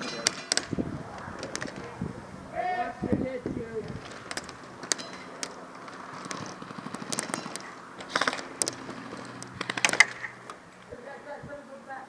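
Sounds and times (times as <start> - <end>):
airsoft guns firing: 0.0 - 2.1, 3.8 - 10.7.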